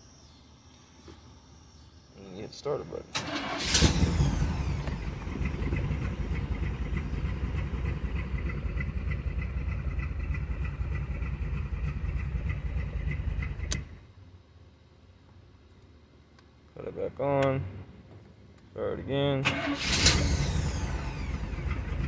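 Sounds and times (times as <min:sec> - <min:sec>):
engine idling with ticking: 0:03.8 - 0:14.0, 0:20.2 - 0:22.0.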